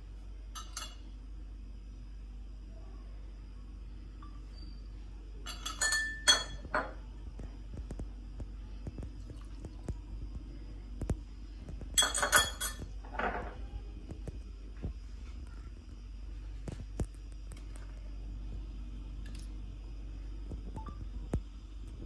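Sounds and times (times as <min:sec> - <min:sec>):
utensils clinking against dishes: 0:00.5 - 0:01.0, 0:05.4 - 0:07.0, 0:12.0 - 0:13.6.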